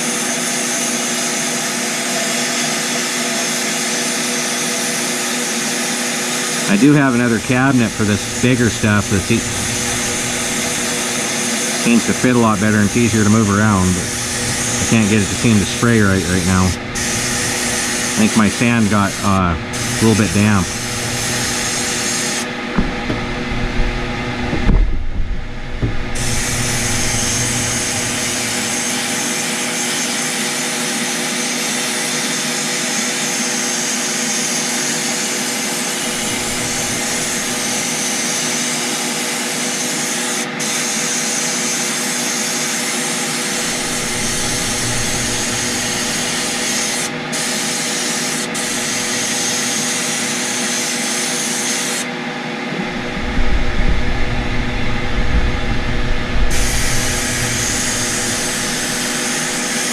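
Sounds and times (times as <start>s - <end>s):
constant hum: 6.6s - 29.8s, 36.0s - 38.0s, 43.5s - 47.4s, 52.6s - 59.9s
sandblast gun spraying: 6.9s - 30.0s, 36.0s - 38.4s, 43.6s - 52.0s, 56.4s - 59.9s.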